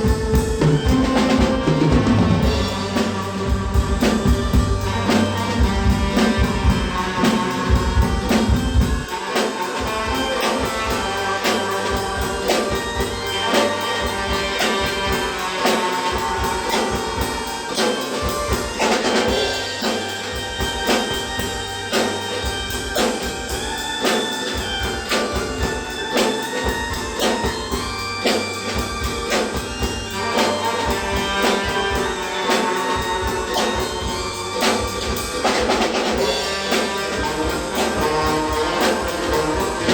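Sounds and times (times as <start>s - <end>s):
deep bass: 0.0s - 9.1s
drum kit beat: 0.0s - 39.9s
tenor saxophone melody: 0.0s - 39.9s.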